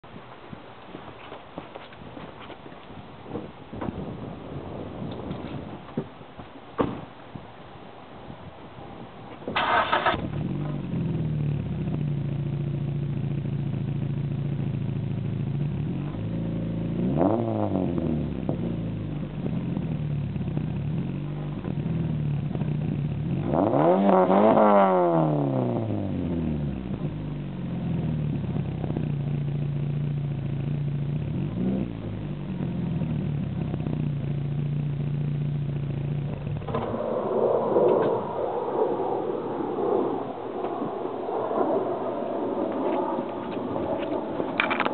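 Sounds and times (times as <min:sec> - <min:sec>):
car engine revving and idling: 0:09.4 - 0:44.9.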